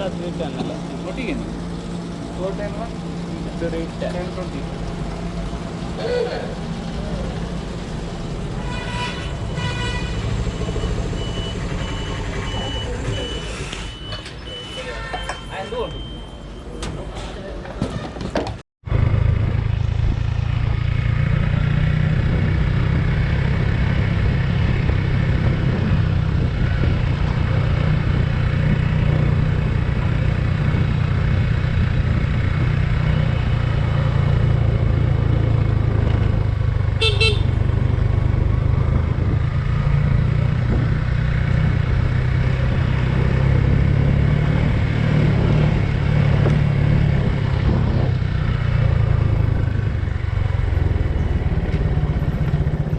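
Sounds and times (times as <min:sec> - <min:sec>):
horn toot: 0:08.6 - 0:10.5, 0:37.0 - 0:37.6
motorcycle engine running: 0:18.9 - 0:52.9.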